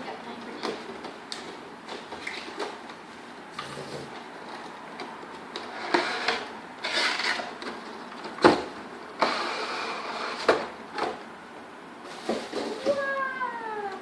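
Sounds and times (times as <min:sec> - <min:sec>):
cardboard and plastic rustling: 0:12.0 - 0:13.2.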